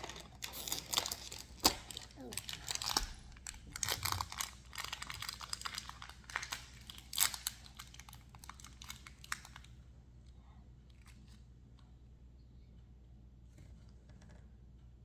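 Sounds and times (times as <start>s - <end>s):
plastic packaging crinkling: 0.0s - 9.7s.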